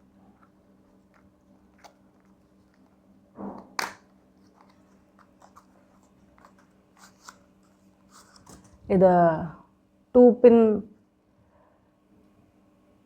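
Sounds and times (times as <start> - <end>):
faint steady hum: 0.0 - 13.0
packaging clicks and rustles: 0.3 - 8.8
packaging crinkle: 0.8 - 3.0, 3.7 - 8.8.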